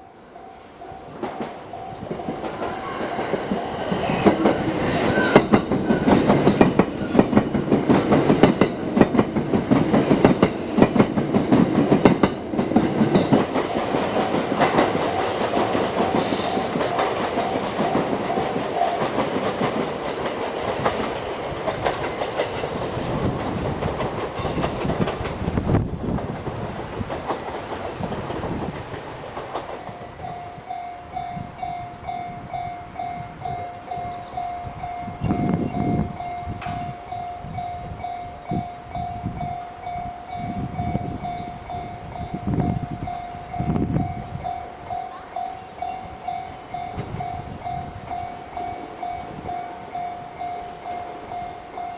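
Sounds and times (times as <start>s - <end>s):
level crossing warning bell: 0.0s - 2.2s, 29.7s - 51.9s
train wheels clacking over rail joints: 1.1s - 30.6s.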